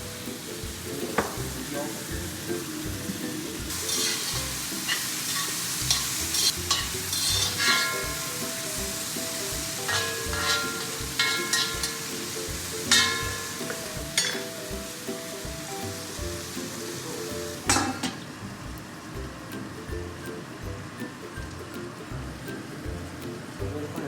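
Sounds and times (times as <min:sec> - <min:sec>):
vegetables sizzling in oil: 0:00.0 - 0:23.6
spatula scraping a wok: 0:03.7 - 0:15.1.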